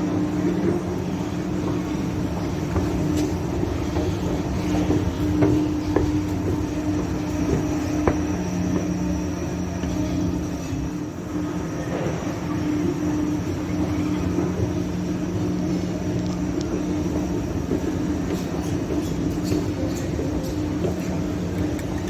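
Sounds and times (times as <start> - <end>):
escalator steps clicking: 1.5 - 10.0.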